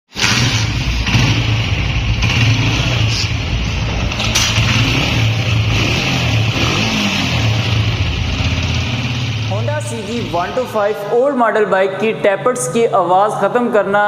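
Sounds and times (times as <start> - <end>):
motorcycle engine idling: 0.2 - 11.1.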